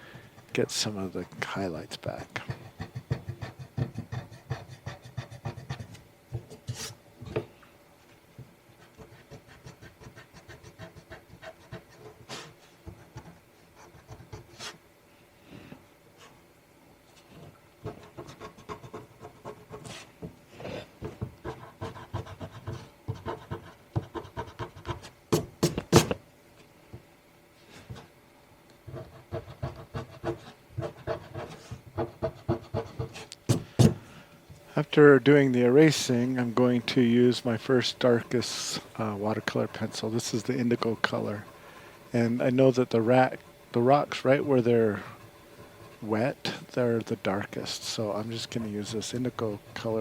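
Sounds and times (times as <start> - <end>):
eraser rubbing on paper: 2.2 - 7.0, 8.8 - 14.8, 17.8 - 20.1, 21.4 - 26.2, 28.9 - 33.9, 35.9 - 50.0.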